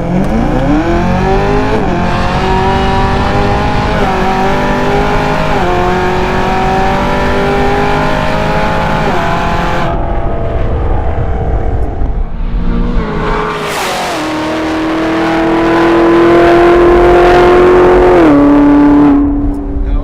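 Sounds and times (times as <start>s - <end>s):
car engine at full throttle: 0.0s - 20.0s.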